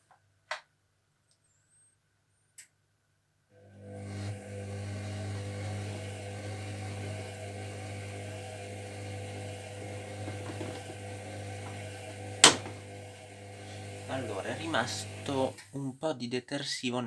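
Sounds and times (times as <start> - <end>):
washing machine humming and hissing: 3.6 - 15.8.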